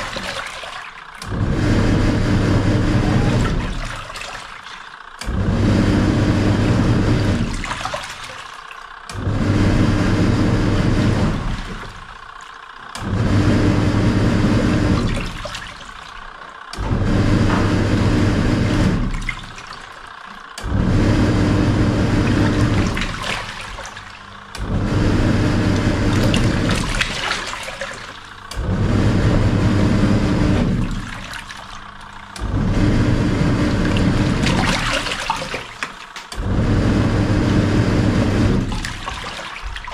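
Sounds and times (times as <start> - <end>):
water sloshing: 0.0 - 1.4, 2.9 - 5.3, 7.4 - 9.1, 10.8 - 13.1, 14.9 - 18.0, 19.0 - 20.7, 22.1 - 24.9, 25.6 - 28.8, 30.6 - 36.5, 38.6 - 39.9
washing machine motor churning: 0.0 - 39.9.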